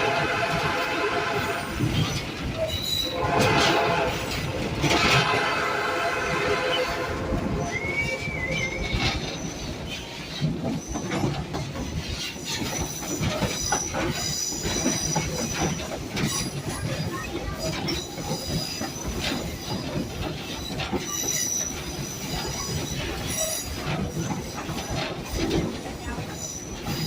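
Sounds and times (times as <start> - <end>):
train wheels rumbling and clattering: 0.0 - 27.0
train wheels squealing: 1.9 - 3.2, 6.8 - 27.0.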